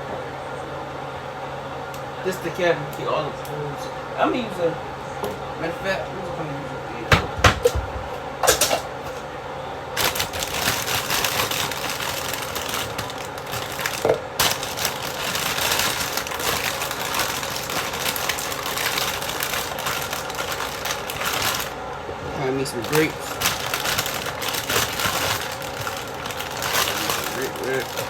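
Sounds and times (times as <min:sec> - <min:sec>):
crackling rattle and rustle: 0:10.0 - 0:28.0.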